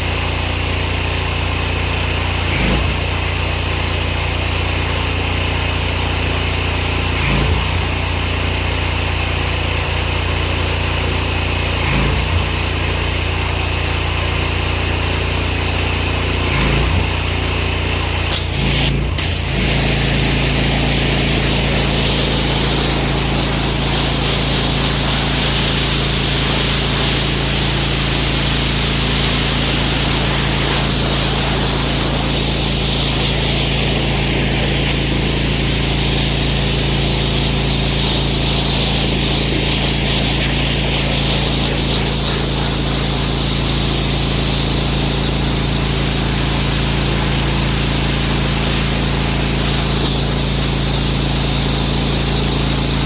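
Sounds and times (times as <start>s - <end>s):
pressure washer motor humming: 0.0s - 53.0s
high-pressure water jet hissing: 15.8s - 17.3s, 17.9s - 53.0s.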